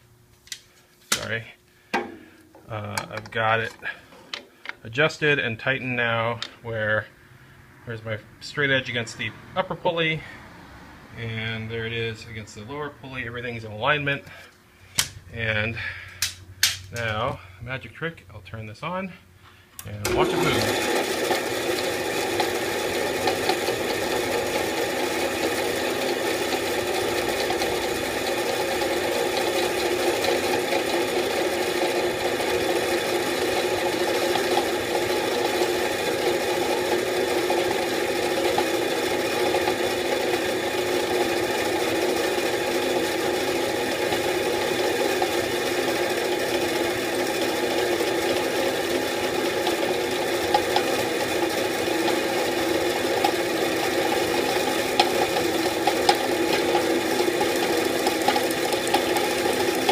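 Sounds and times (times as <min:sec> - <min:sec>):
bandsaw running: 0:20.0 - 0:59.9.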